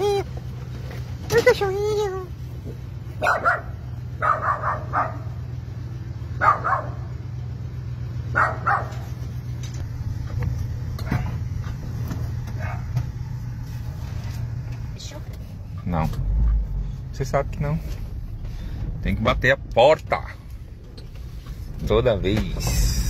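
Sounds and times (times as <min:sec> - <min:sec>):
car engine idling: 0:00.0 - 0:23.0
small dog barking: 0:03.2 - 0:05.4, 0:06.4 - 0:07.1, 0:08.3 - 0:09.1, 0:12.5 - 0:13.0.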